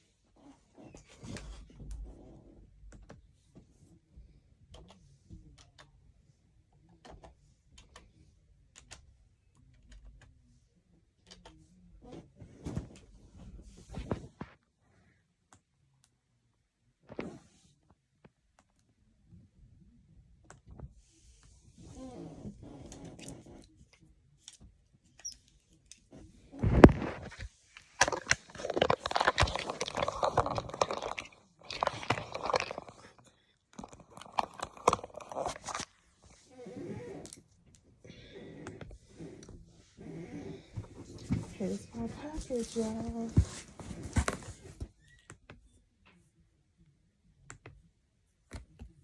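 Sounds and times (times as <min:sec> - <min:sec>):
crunching handling noise: 0:26.0 - 0:36.4
objects clicking and tapping: 0:26.8 - 0:35.9.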